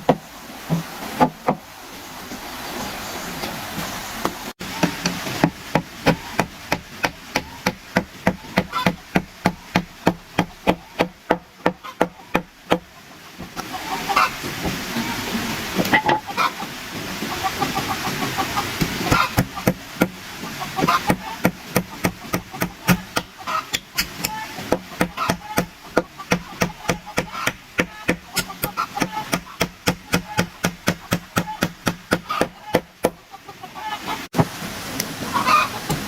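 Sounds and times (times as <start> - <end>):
chickens clucking: 2.8 - 34.4, 35.0 - 36.0
tool knocking on wood: 4.7 - 12.9, 21.1 - 33.2.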